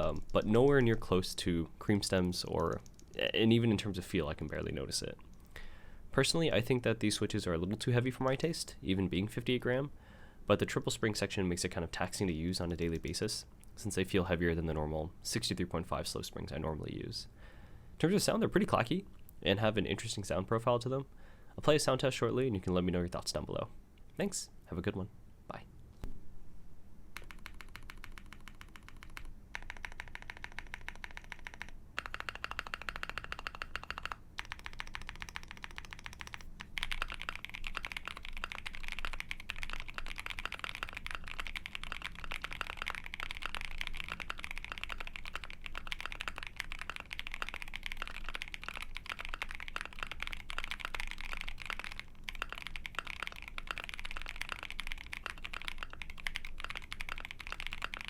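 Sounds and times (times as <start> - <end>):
mechanical keyboard typing: 0.0 - 4.8, 27.2 - 58.0.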